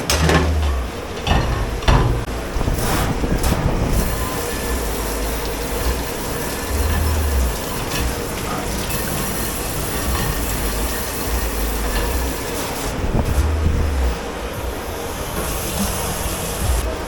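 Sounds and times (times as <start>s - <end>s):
low rumble: 0.0s - 9.0s
dishwashing machine and water rushing: 0.0s - 17.0s.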